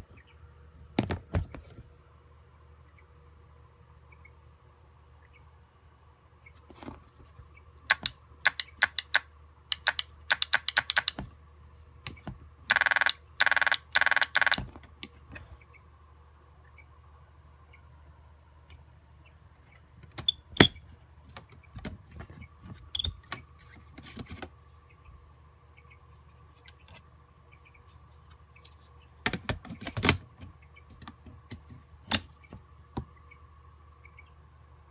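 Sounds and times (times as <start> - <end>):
sharp clicks and light knocks: 7.9 - 11.3.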